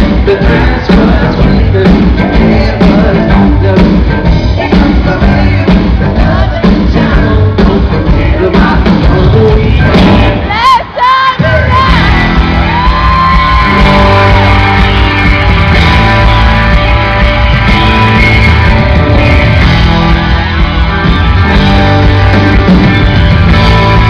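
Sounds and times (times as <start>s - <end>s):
steady bass: 0.0s - 10.7s, 11.4s - 24.0s
rock band playing: 0.0s - 24.0s
electric guitar lines: 12.0s - 24.0s.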